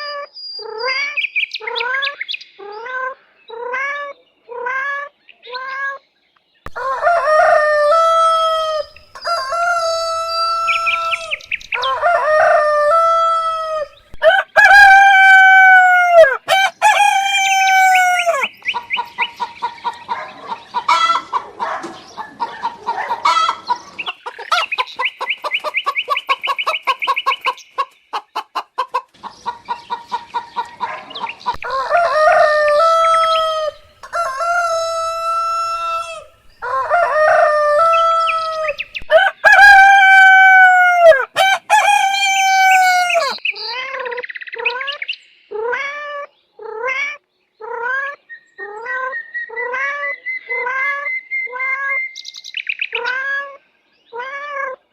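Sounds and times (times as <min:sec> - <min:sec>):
roosters crowing: 0:06.7 - 0:27.6, 0:29.6 - 0:43.4
hens clucking: 0:06.7 - 0:43.4.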